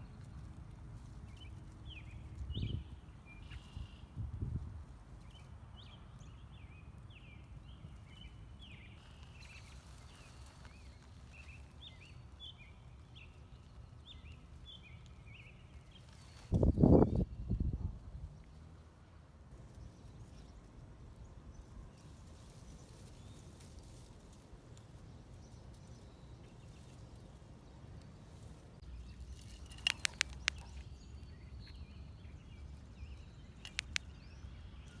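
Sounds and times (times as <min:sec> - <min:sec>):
sharp clicks: 0:29.4 - 0:30.8, 0:33.6 - 0:34.2.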